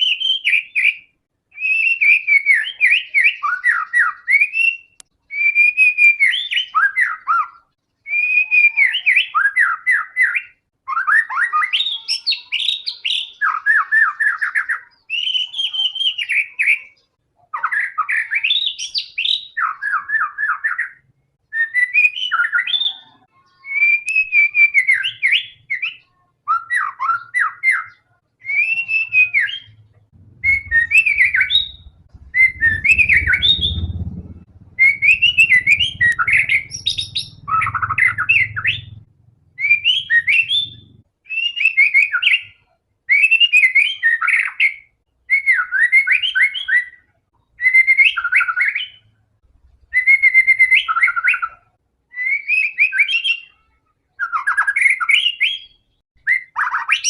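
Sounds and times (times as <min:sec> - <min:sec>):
bird singing whistled phrases: 0:00.0 - 0:38.9, 0:39.6 - 0:47.0, 0:47.6 - 0:49.0, 0:49.9 - 0:53.5, 0:54.2 - 0:57.0
low rumble: 0:29.6 - 0:41.0.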